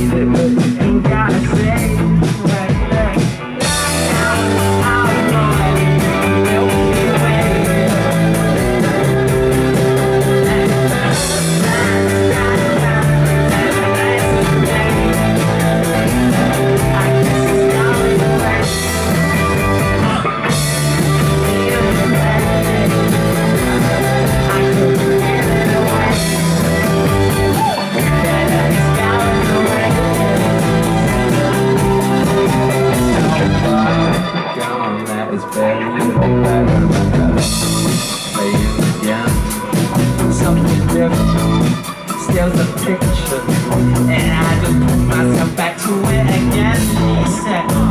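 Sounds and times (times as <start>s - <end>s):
live band playing: 0.0s - 47.9s
person singing: 0.0s - 47.9s.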